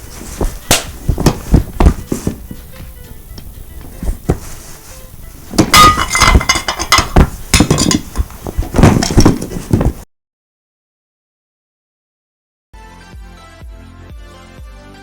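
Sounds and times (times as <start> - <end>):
glass and crockery smashing: 5.6 - 8.3.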